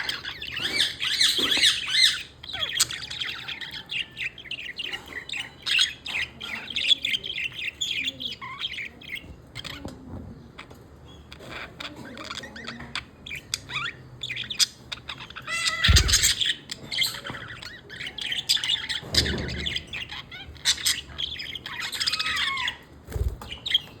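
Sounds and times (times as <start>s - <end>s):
budgerigar chattering: 11.1s - 22.8s.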